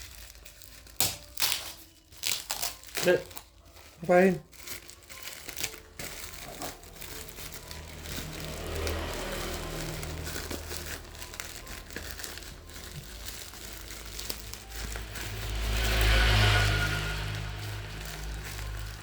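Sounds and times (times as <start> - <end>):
packaging crinkling: 0.0 - 19.0.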